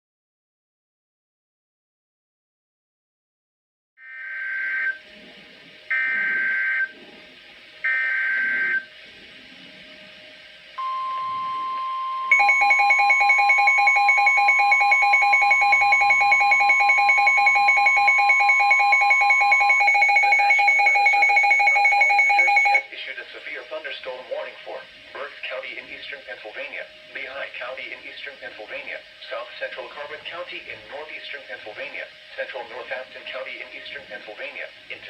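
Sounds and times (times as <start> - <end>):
steady warning alarm tone: 4.0 - 5.2, 5.9 - 7.2, 7.8 - 9.0, 10.8 - 35.0
rapidly pulsing electronic alarm beep: 5.9 - 6.9, 10.8 - 22.9.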